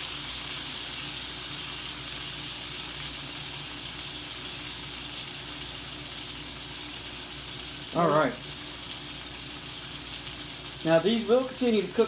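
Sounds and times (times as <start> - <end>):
steaks sizzling in a skillet: 0.0 - 12.0.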